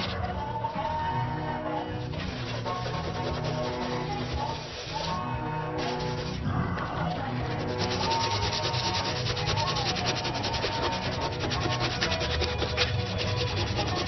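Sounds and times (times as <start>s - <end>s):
sanding rasping on metal panel: 2.1s - 6.4s, 7.4s - 14.0s.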